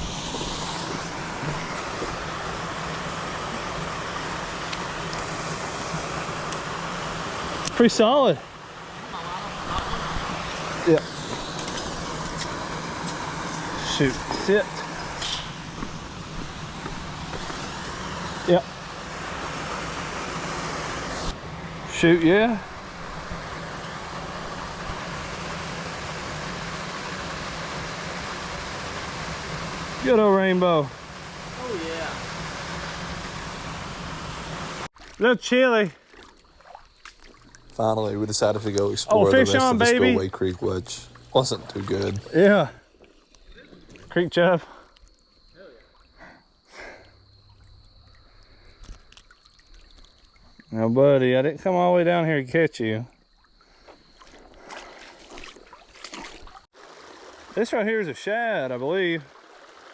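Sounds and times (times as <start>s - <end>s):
creek water flowing: 0.0s - 42.8s, 53.7s - 59.9s
faint ticks: 44.9s - 45.4s.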